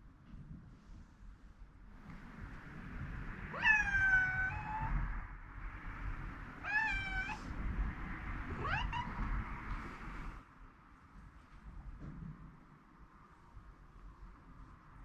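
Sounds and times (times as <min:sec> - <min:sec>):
cat meowing: 0:03.2 - 0:05.1, 0:05.9 - 0:10.4.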